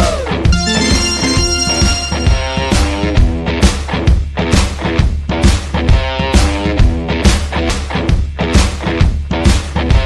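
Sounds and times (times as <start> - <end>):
upbeat music with guitar: 0.5 - 3.2.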